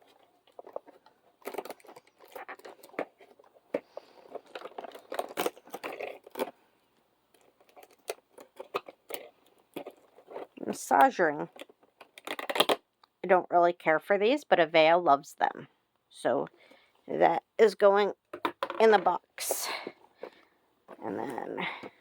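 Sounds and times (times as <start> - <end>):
packaging tearing and crinkling: 0.1 - 6.6, 7.3 - 10.6.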